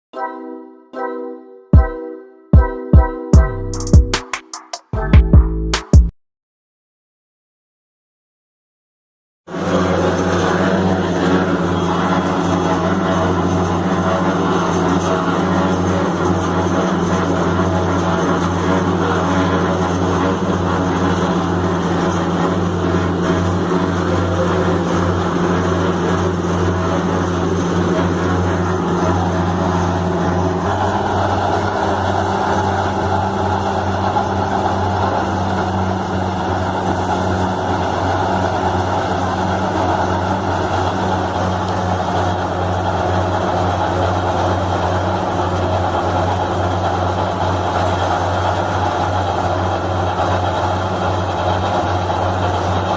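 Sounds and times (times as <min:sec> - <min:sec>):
heavy machinery droning: 0:09.5 - 0:52.9.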